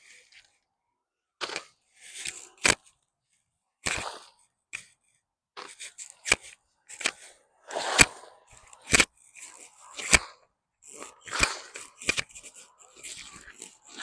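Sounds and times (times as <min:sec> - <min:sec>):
hand digging scraping soil: 0:03.9 - 0:04.4, 0:05.6 - 0:14.0.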